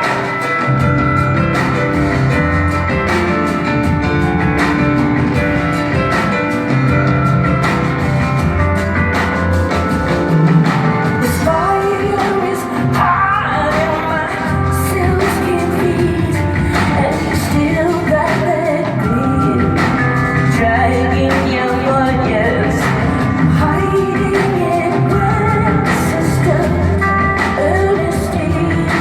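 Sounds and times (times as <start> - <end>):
bass line: 0.0 - 29.0
drums: 0.0 - 29.0
woman singing: 10.9 - 29.0.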